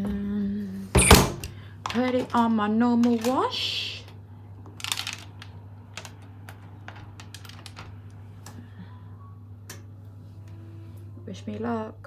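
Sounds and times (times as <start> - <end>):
washing machine controls clicking: 1.0 - 8.6.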